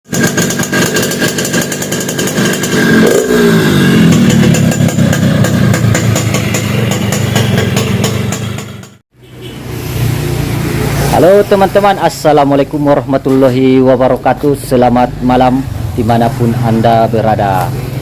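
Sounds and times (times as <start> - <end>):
exhaust popping: 0.1 - 9.0
two-stroke engine revving: 0.1 - 13.4.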